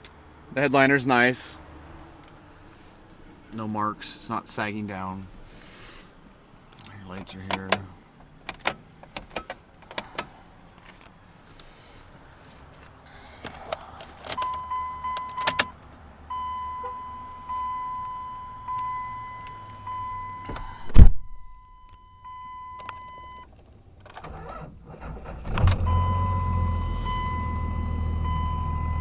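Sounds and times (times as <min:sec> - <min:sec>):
diesel engine cranking and idling: 0:00.0 - 0:21.2, 0:21.8 - 0:29.0
dashboard warning chime: 0:14.3 - 0:23.5, 0:25.8 - 0:29.0.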